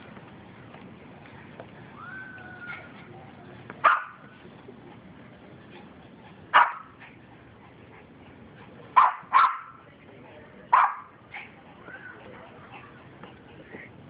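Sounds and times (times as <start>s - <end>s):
dog barking: 3.8s - 4.2s, 6.5s - 6.9s, 9.0s - 9.8s, 10.7s - 11.1s.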